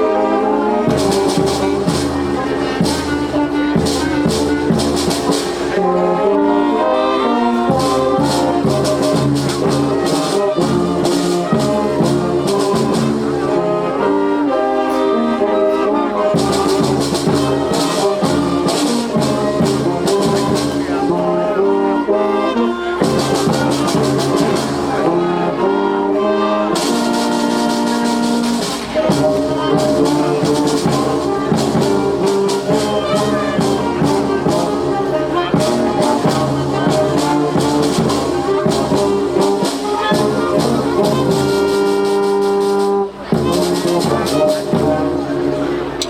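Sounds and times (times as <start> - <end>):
wind band playing: 0.0 - 46.0
high percussion: 0.9 - 5.8, 7.7 - 13.5, 26.7 - 46.0.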